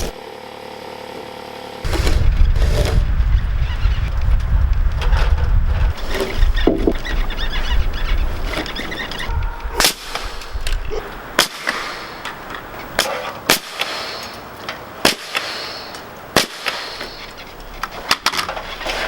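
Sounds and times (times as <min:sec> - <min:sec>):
low rumble: 0:01.8 - 0:13.0
sharp knocks: 0:06.6 - 0:07.0.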